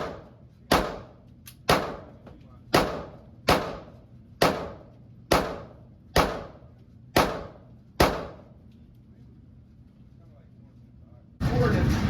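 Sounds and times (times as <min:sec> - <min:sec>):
gunshots with echo: 0:00.0 - 0:08.5.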